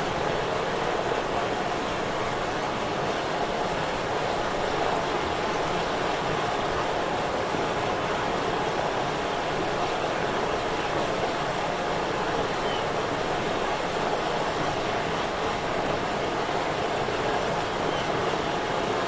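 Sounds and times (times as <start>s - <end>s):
water rushing: 0.0s - 19.0s.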